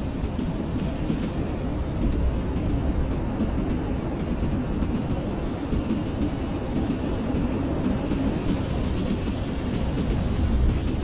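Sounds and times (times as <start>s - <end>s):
blizzard wind rushing: 0.0s - 11.0s.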